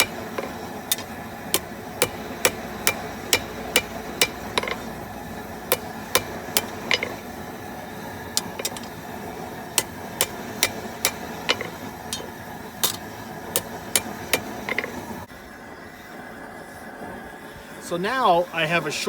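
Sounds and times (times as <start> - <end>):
hammer striking steel on anvil: 0.0 - 7.3, 8.4 - 9.0, 9.8 - 15.0.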